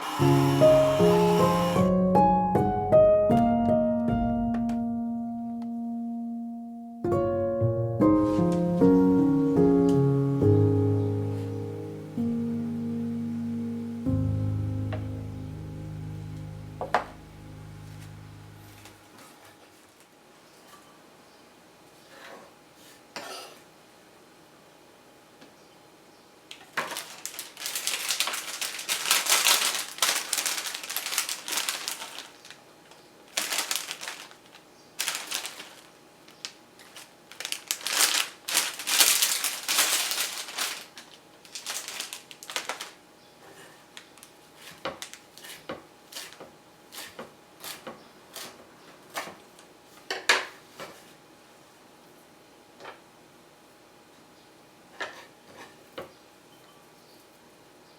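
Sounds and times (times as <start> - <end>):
small hard objects clattering: 26.6 - 32.6, 33.3 - 43.0.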